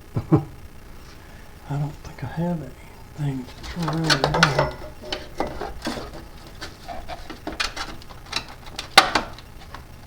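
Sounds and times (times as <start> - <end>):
hand tools clinking and knocking: 3.4 - 10.0.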